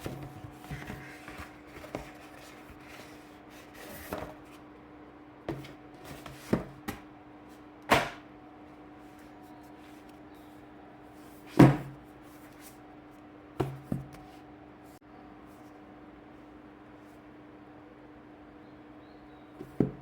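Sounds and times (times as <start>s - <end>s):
book packaging knocks and thuds: 0.0s - 2.7s, 5.5s - 7.0s, 7.9s - 8.2s, 11.5s - 12.0s, 13.6s - 14.2s, 19.6s - 20.0s.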